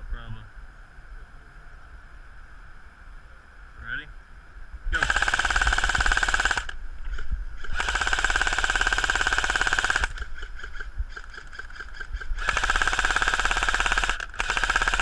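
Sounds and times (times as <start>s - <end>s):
airsoft gun firing bursts: 5.0s - 6.8s, 7.6s - 10.3s, 12.4s - 15.0s.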